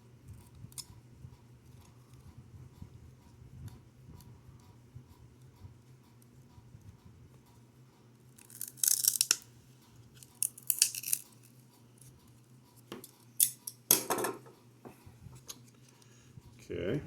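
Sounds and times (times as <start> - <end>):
plastic packaging being torn: 8.4 - 9.4, 10.2 - 11.3.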